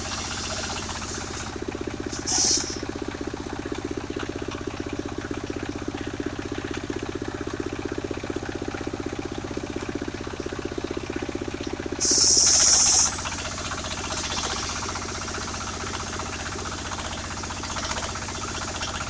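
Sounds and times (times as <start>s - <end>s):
sawmill engine running: 0.0s - 19.0s
loud hiss: 2.1s - 2.8s, 12.0s - 13.5s.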